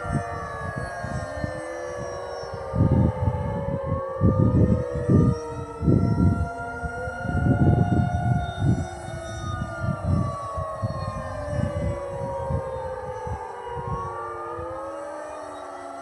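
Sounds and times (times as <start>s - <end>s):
distant tornado sirens wailing: 0.0s - 16.0s.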